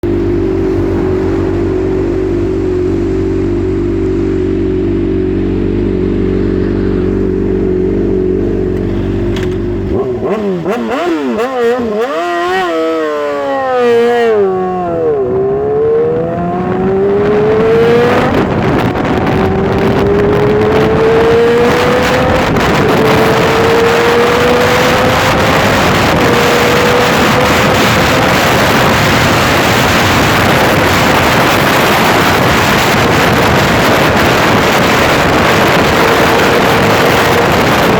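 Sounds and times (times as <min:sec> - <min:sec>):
motorcycle engine revving: 0:00.0 - 0:37.9
wind noise: 0:00.0 - 0:37.9.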